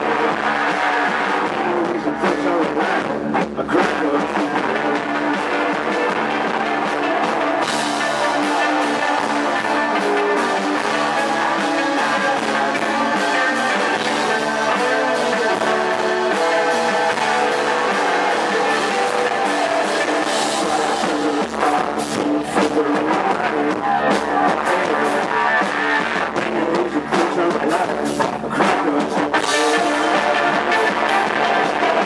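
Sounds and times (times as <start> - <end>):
rock band playing live: 0.0 - 32.0.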